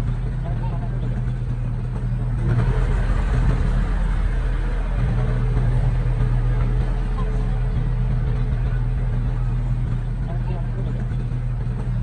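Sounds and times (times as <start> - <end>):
diesel engine running under load: 0.0 - 12.0.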